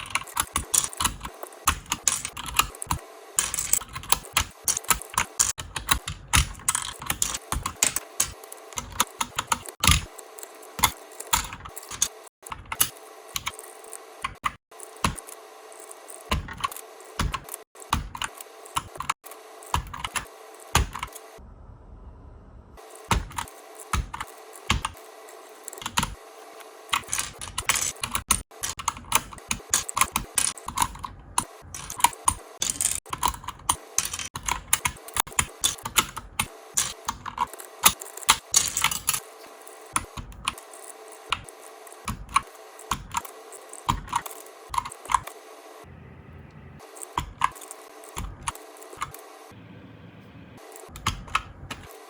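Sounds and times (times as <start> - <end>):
mechanical keyboard key clacks: 0.0 - 21.2, 22.8 - 26.2, 26.9 - 45.4, 46.9 - 49.3, 50.7 - 52.0.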